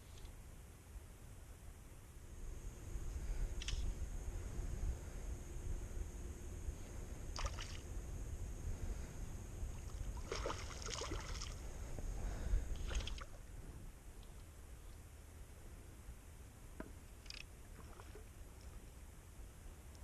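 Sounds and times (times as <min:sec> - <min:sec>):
low steady rumble: 0:00.0 - 0:20.0
water splashing: 0:07.4 - 0:07.8, 0:09.9 - 0:11.6.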